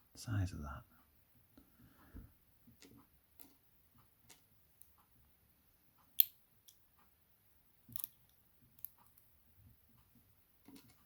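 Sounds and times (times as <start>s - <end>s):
tweezers and pins clicking: 6.0s - 7.1s, 7.9s - 9.3s.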